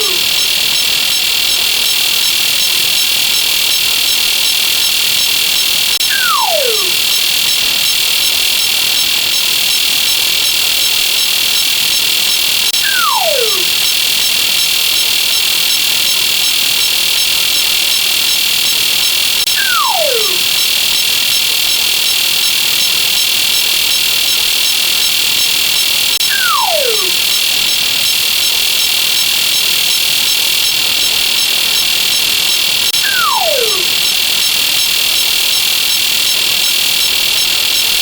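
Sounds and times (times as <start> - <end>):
high-pitched buzz: 0.0 - 38.0
slide whistle gliding down: 6.1 - 7.0, 26.3 - 27.1, 33.0 - 33.8.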